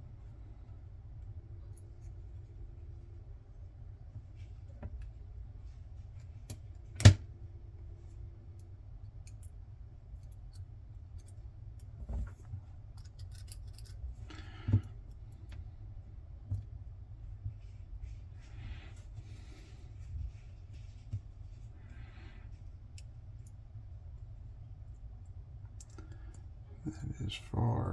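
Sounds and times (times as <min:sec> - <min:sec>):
metallic clicks of lock parts: 0:06.5 - 0:07.2, 0:08.6 - 0:09.6, 0:13.0 - 0:14.0.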